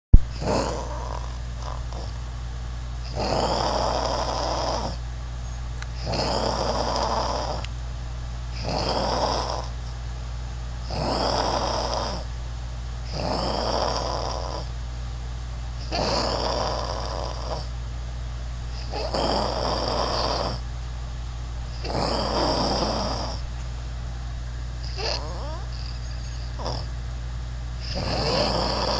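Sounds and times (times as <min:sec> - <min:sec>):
steady low hum: 0:00.1 - 0:28.9
person snoring: 0:00.3 - 0:02.2, 0:03.1 - 0:05.0, 0:06.0 - 0:07.7, 0:08.6 - 0:09.8, 0:10.9 - 0:12.3, 0:13.1 - 0:14.7, 0:15.8 - 0:17.7, 0:18.7 - 0:20.6, 0:21.8 - 0:23.4, 0:24.8 - 0:26.9, 0:27.8 - 0:28.9.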